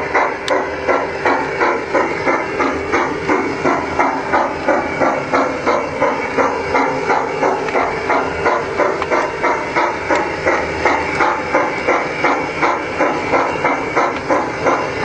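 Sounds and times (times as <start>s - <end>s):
model steam locomotive chuffing: 0.0s - 15.0s.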